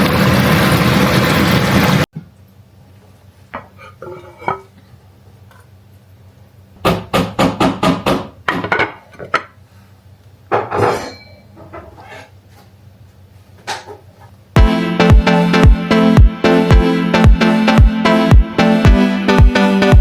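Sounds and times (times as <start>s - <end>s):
metal cookware clinking: 3.7s - 4.7s, 10.6s - 12.0s
sharp knocks: 6.8s - 8.7s.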